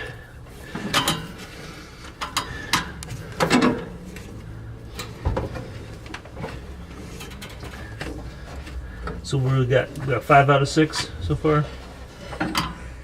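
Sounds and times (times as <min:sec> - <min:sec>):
metallic clicks of nuts and tools: 0:00.8 - 0:01.4, 0:02.1 - 0:03.9, 0:12.3 - 0:12.9.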